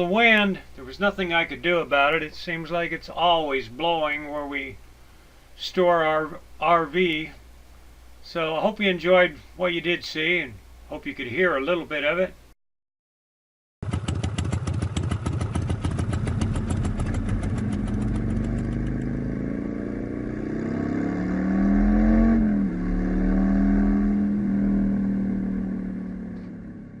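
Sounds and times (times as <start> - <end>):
motorcycle engine revving: 13.8 - 27.0.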